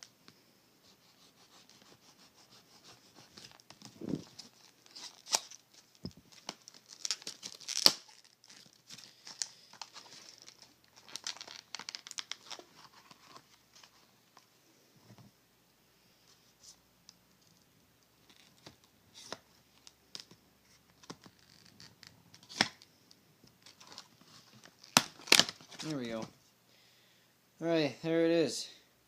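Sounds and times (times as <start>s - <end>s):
knife cutting packaging: 1.1s - 5.6s, 24.9s - 25.8s
packaging crinkling and tearing: 3.1s - 14.0s, 21.0s - 22.9s, 23.6s - 26.2s.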